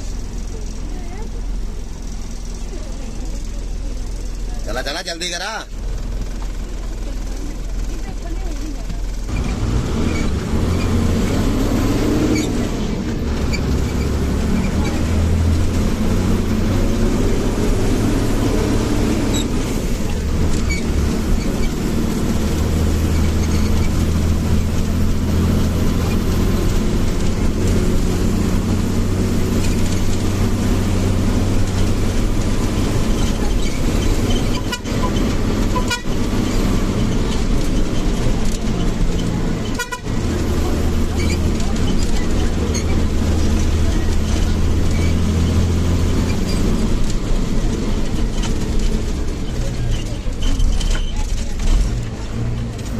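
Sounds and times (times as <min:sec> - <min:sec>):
bus engine rumbling: 0:00.0 - 0:52.9
bus horn tooting: 0:33.3 - 0:38.2, 0:38.8 - 0:41.9.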